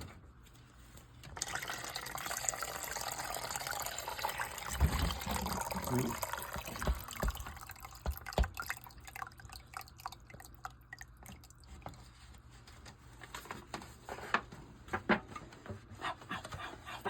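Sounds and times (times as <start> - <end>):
drippings dripping: 1.4 - 11.9.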